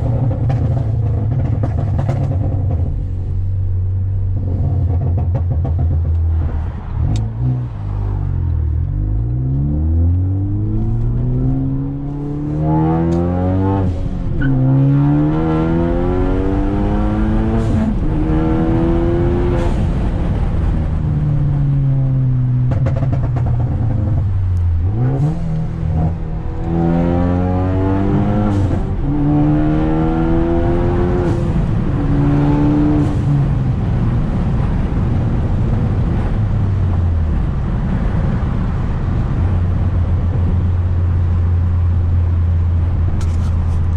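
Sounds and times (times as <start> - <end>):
exhaust pops and crackles: 0.0 - 3.1, 4.3 - 7.3, 22.6 - 24.8, 42.8 - 43.9
car engine accelerating hard: 4.1 - 43.9.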